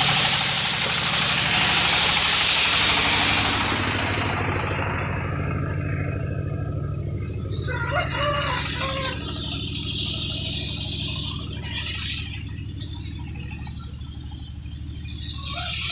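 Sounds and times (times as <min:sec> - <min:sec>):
hiss: 0:00.0 - 0:04.3
chainsaw engine idling: 0:00.0 - 0:15.9
bird-like clucks: 0:07.2 - 0:15.9.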